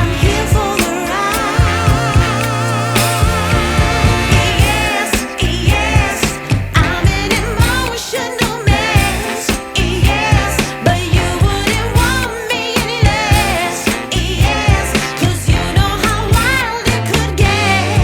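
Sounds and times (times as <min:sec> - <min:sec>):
drum and bass beat: 0:00.0 - 0:18.0
pop song with sung vocals: 0:00.0 - 0:18.0.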